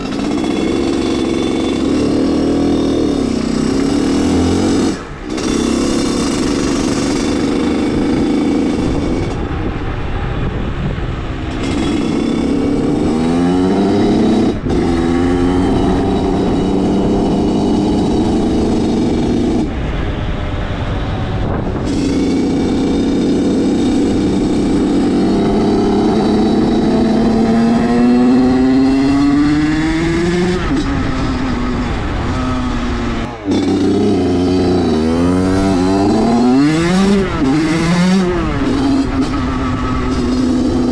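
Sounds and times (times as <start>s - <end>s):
motorbike engine revving high: 0.0s - 40.9s.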